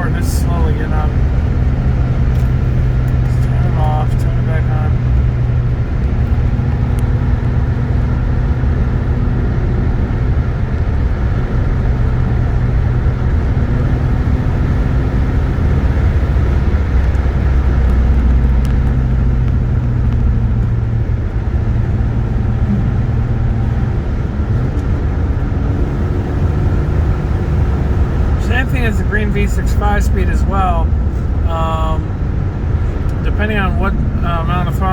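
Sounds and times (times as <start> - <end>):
driver talking: 0.0 - 5.9, 27.0 - 34.9
car engine droning: 0.0 - 34.9
engine misfiring: 0.0 - 34.9
road noise inside car: 0.0 - 34.9.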